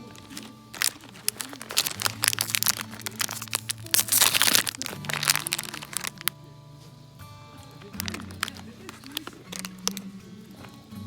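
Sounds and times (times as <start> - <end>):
dry wood crackling and snapping: 0.0 - 6.3, 7.8 - 10.1.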